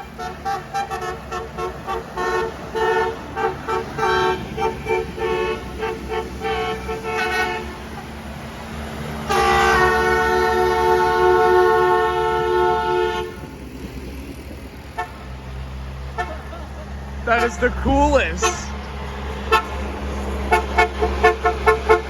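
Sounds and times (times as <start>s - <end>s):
train horns multi-tone chord: 0.2s - 7.7s, 9.3s - 13.4s.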